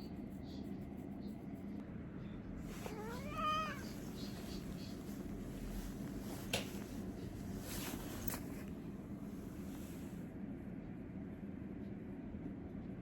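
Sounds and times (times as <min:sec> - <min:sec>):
soft rustles: 0:02.6 - 0:10.2.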